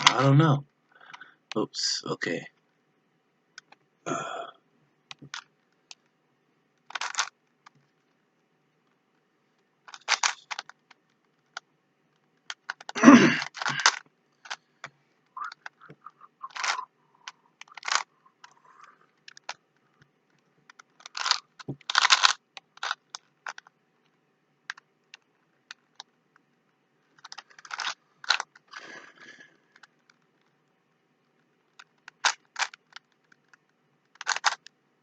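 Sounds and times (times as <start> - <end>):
puzzle cube clicking and scraping: 0.0 - 0.4, 5.1 - 6.1, 6.8 - 8.2, 8.8 - 26.4, 27.0 - 30.6, 31.3 - 34.8.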